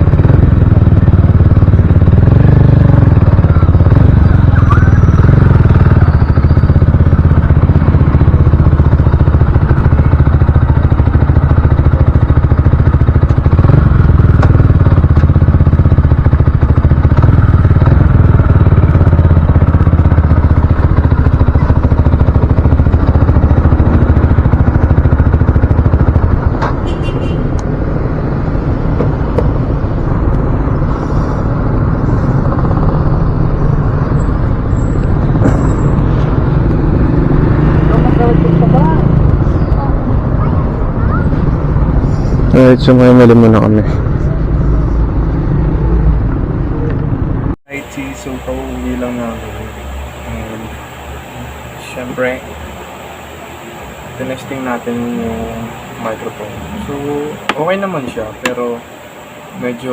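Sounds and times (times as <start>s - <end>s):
motorcycle engine running: 0.0s - 59.9s
wind buffeting helmet microphone: 18.0s - 42.5s.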